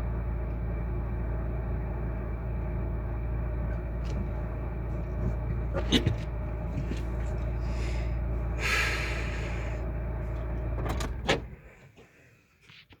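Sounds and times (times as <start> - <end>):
vehicle rumbling: 0.0 - 13.0.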